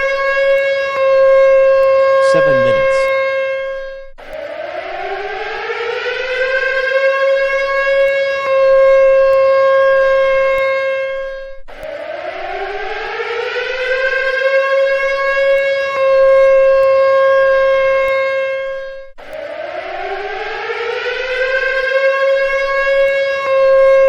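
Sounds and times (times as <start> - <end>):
siren winding up: 19.2 - 22.1.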